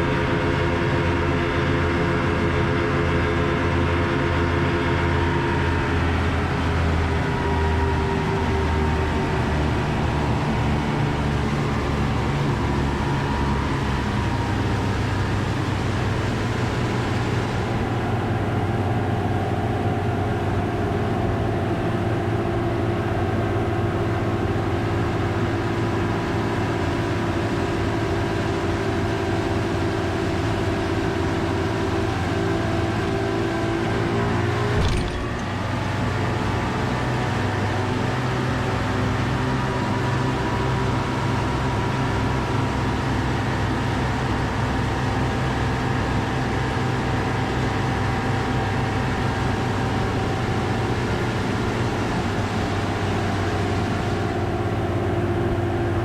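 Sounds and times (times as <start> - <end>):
outboard engine running: 0.0 - 56.0
wind: 0.0 - 56.0
water noise: 32.2 - 37.2, 49.4 - 54.5
brief knock: 34.7 - 35.6.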